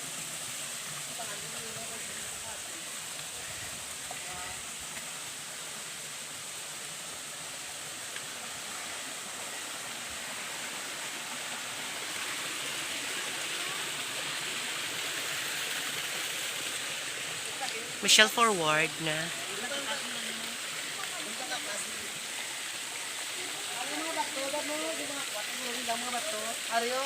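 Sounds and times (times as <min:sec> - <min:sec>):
stream water rushing: 0:00.0 - 0:27.0.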